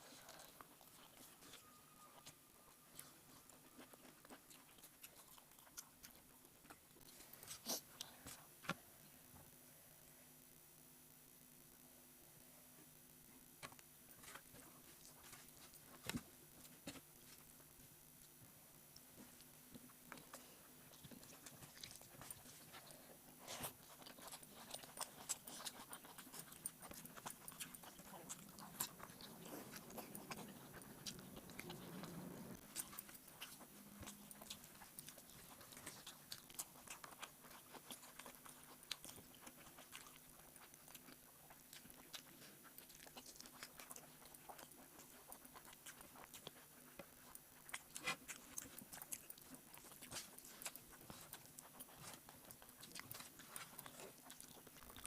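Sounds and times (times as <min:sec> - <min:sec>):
person chewing: 0:00.0 - 0:08.8, 0:19.8 - 0:55.0.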